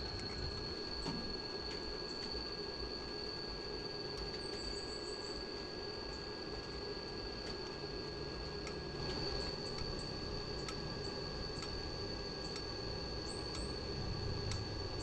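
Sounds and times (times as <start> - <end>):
welding hiss and whine: 0.0 - 15.0
sharp welding ticks: 11.5 - 11.8, 13.3 - 13.8.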